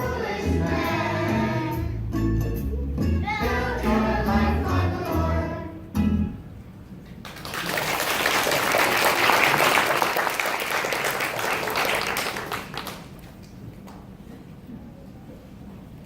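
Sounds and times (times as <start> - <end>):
applause: 7.2 - 14.0.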